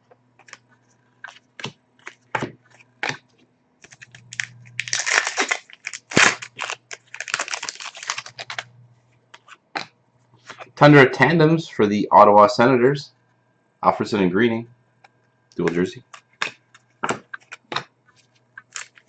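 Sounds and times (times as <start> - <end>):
cards clicking and tapping: 0.4 - 0.6, 1.2 - 8.6, 9.3 - 9.9, 15.6 - 19.0
foil wrapper crinkling: 3.8 - 8.7, 16.0 - 19.0.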